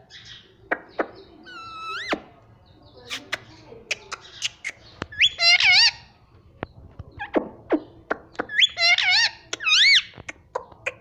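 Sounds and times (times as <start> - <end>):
parakeet calling: 1.4 - 2.2, 3.9 - 6.1, 7.8 - 10.2
parakeet wavering squawk: 5.2 - 6.1.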